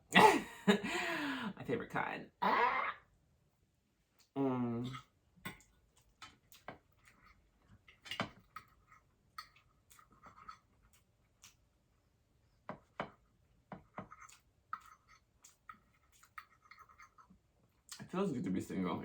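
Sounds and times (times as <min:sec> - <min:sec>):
soft chewing: 0:04.0 - 0:18.2.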